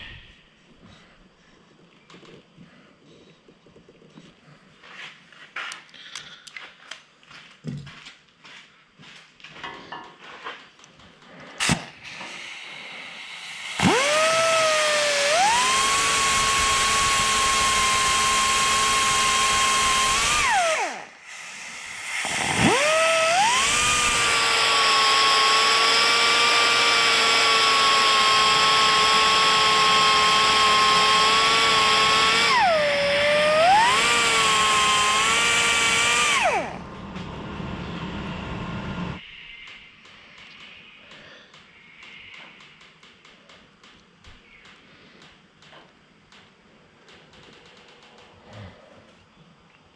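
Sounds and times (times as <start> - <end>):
electric drill running: 11.6 - 39.2.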